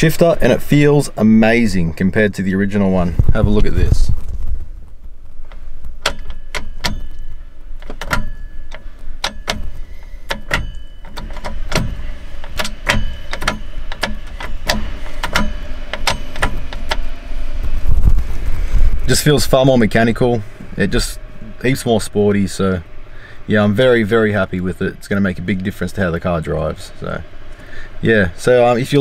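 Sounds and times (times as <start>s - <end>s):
gear lever clicking and clunking: 5.5s - 17.9s.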